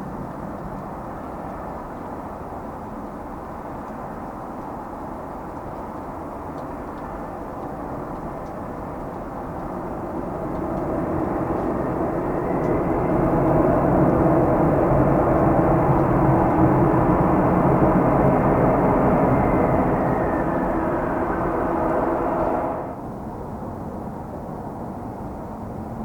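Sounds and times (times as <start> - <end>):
jet engines landing: 7.5 - 23.2
faint whine: 8.5 - 23.0.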